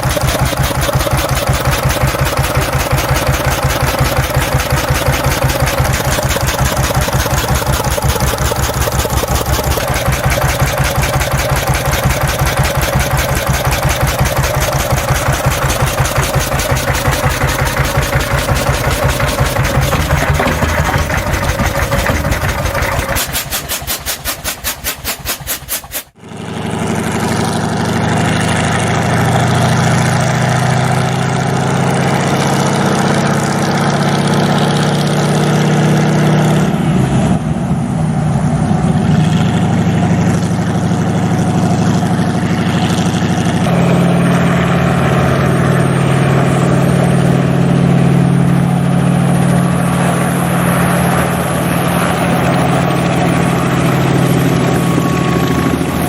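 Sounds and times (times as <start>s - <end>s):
old engine rhythmic beat: 0.0s - 26.2s, 46.0s - 56.0s
engine running steadily: 0.0s - 56.0s.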